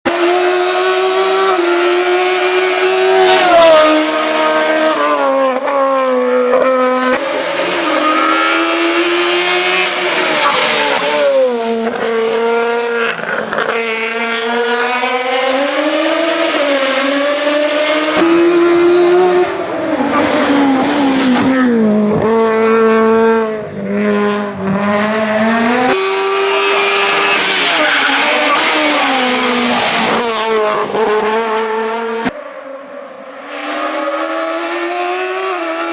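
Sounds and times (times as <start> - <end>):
racing car engine revving: 0.1 - 32.4, 33.0 - 35.9.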